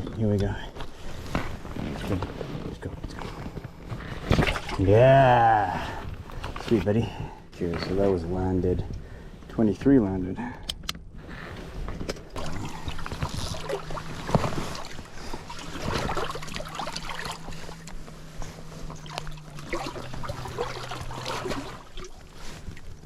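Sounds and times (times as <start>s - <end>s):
water splashing against raft: 4.1s - 5.0s, 12.4s - 23.0s
handling knocks and rustles: 10.9s - 23.0s.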